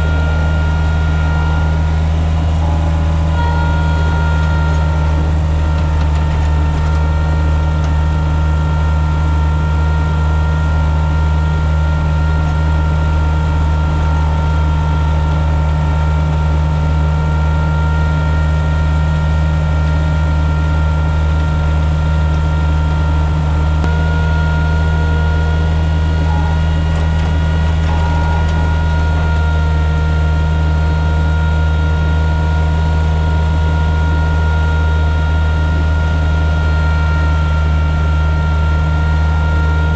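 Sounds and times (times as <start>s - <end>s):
diesel engine running under load: 0.0s - 39.9s
steady whining tones: 0.0s - 39.9s.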